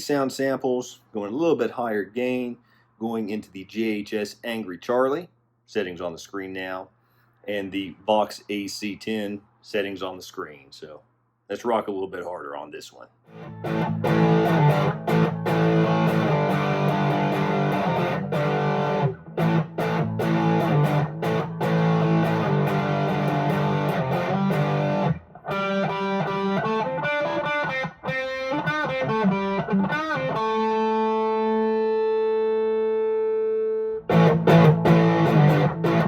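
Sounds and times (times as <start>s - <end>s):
overdriven electric guitar: 13.3s - 36.0s.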